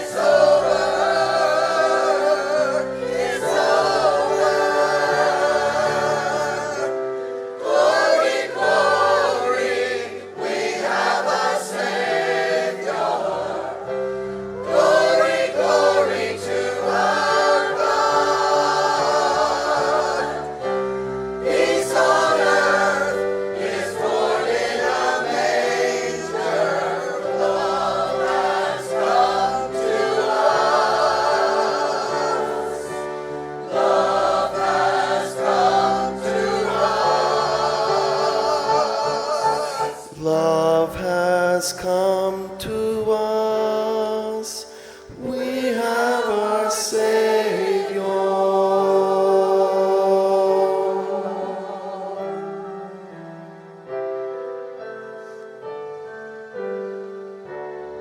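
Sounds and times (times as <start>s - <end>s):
sustained instrumental accompaniment: 0.0s - 40.8s
church choir singing a hymn: 0.0s - 58.0s.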